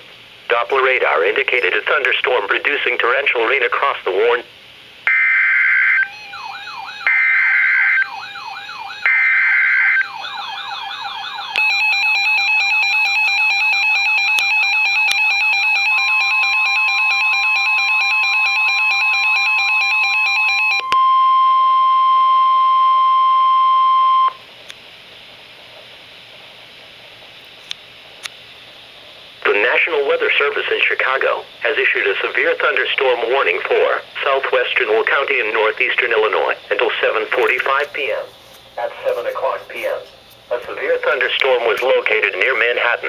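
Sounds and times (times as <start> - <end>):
wailing alert sweep: 5.1 - 14.0.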